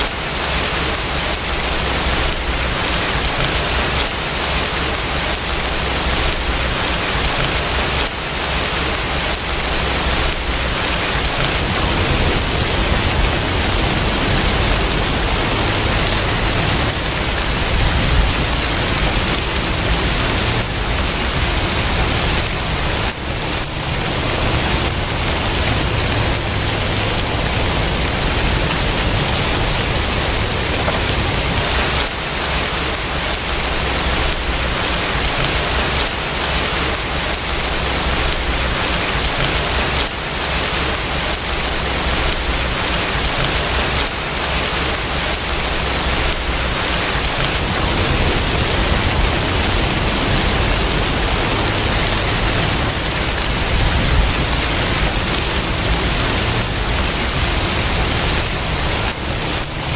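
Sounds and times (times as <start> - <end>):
heavy rain hiss: 0.0 - 59.9
low rumble: 9.5 - 32.0, 45.9 - 59.9.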